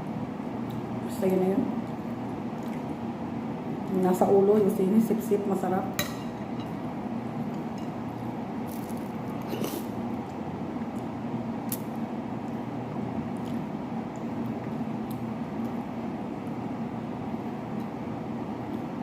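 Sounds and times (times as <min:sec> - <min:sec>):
steady background hum: 0:00.0 - 0:19.0.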